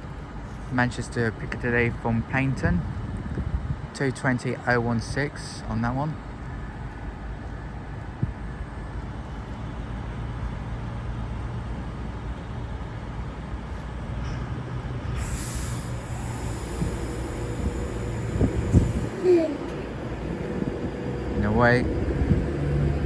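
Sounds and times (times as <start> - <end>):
trains rumbling: 12.9 - 23.0
high hiss: 15.2 - 23.0.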